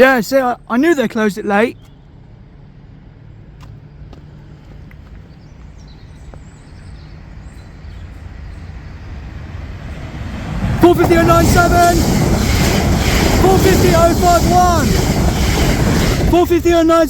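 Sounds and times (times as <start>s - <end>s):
electric train rumble: 4.0s - 17.0s.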